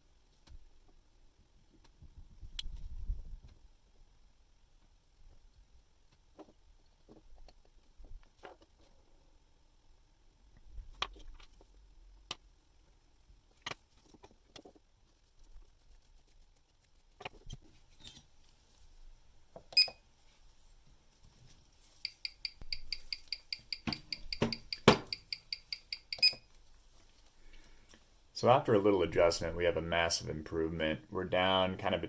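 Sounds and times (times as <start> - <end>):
small tools clicking on metal: 22.0 - 26.4.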